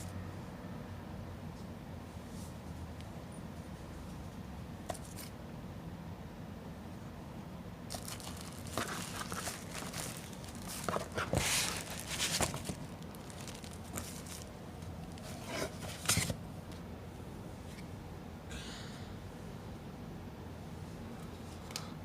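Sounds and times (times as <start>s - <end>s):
steady low hum: 0.0s - 22.0s
wrapping crinkling and rustling: 7.9s - 16.4s.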